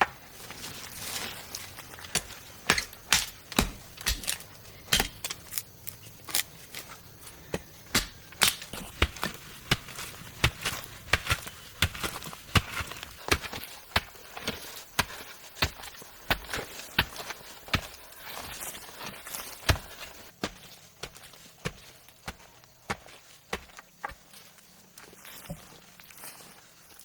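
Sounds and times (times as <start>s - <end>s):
rustling: 0.2s - 22.1s
sharp knocks and strikes: 2.1s - 5.4s, 7.9s - 14.1s.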